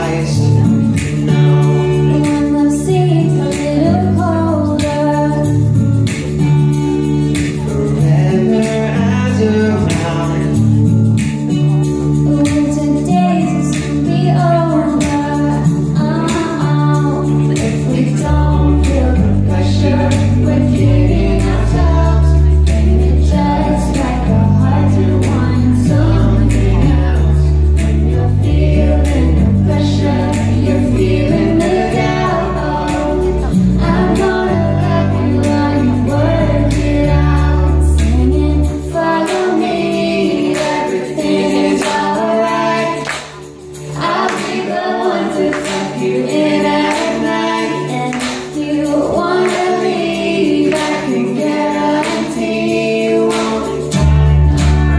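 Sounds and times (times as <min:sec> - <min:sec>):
live band music: 0:00.0 - 0:54.9
people singing: 0:00.0 - 0:54.9
heavy bass notes: 0:13.5 - 0:40.5, 0:53.8 - 0:54.9.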